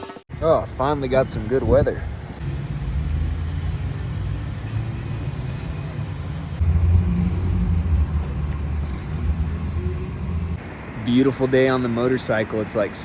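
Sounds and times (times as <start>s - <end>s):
wind rumbling on microphone: 0.4s - 10.6s
motorcycle engine running: 2.4s - 10.6s.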